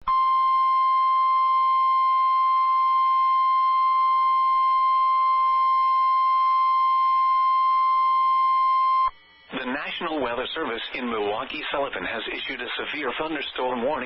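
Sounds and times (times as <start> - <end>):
loud steady alarm tone: 0.0 - 10.7.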